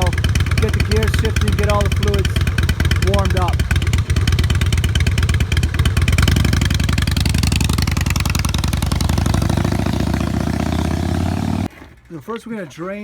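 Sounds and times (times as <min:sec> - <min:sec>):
motorcycle engine idling: 0:00.0 - 0:12.1.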